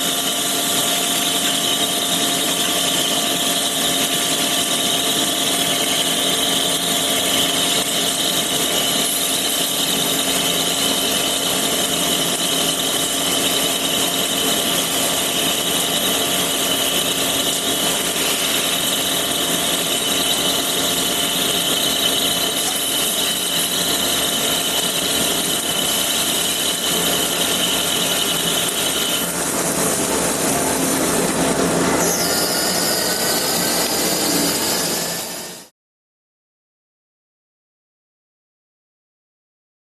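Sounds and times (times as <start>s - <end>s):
high machine whine: 0.0s - 35.7s
lathe running: 0.0s - 35.7s.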